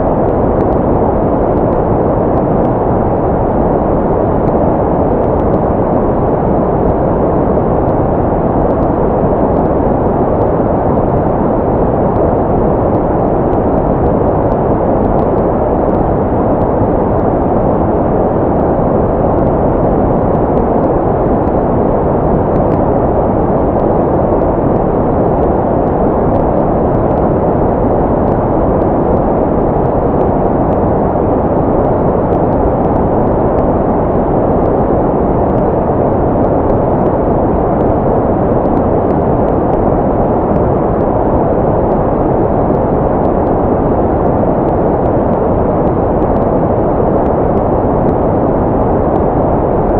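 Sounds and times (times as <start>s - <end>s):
muffled white noise: 0.0s - 49.9s.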